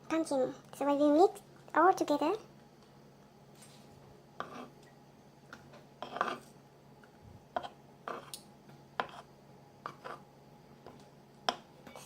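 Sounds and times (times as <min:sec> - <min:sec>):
utensil scraping a bowl: 0:04.4 - 0:04.8, 0:06.0 - 0:06.5, 0:07.6 - 0:08.4, 0:09.0 - 0:10.3.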